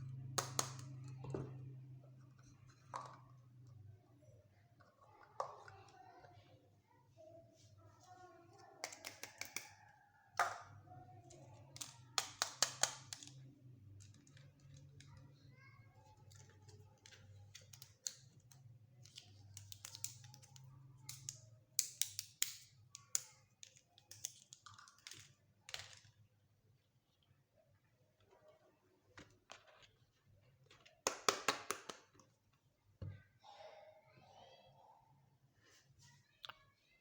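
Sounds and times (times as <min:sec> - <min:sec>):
plastic toy pieces clicking: 0:11.3 - 0:13.4, 0:17.5 - 0:26.2.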